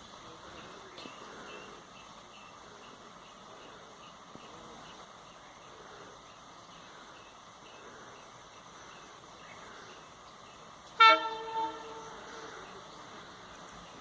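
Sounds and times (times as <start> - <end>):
locomotive horn blast: 11.0 - 12.4.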